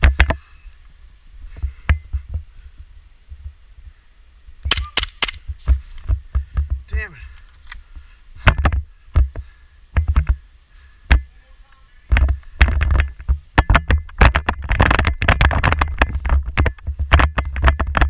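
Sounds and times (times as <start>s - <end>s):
sharp clicks and knocks: 12.1s - 18.0s.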